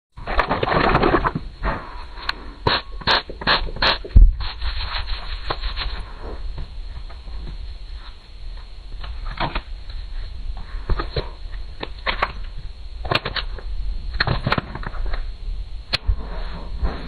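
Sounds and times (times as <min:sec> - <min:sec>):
steady low rumble: 0:00.2 - 0:17.0.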